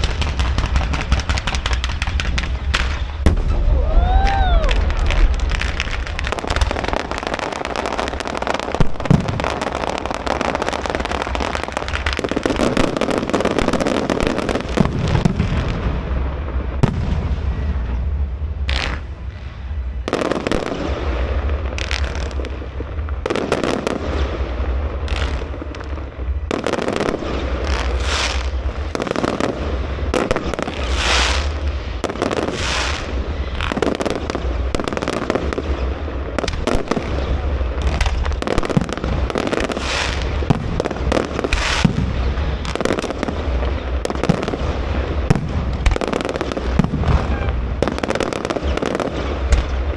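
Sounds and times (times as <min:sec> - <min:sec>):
firework shells bursting: 0:00.0 - 0:15.4
fireworks crackling: 0:00.0 - 0:49.9.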